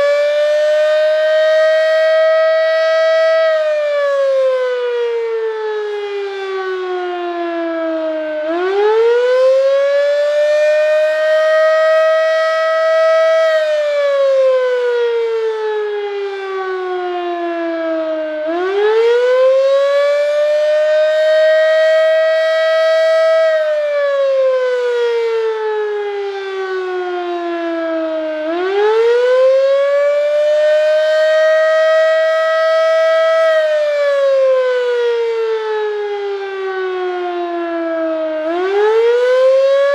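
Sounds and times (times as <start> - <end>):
fire siren wailing: 0.0 - 39.9.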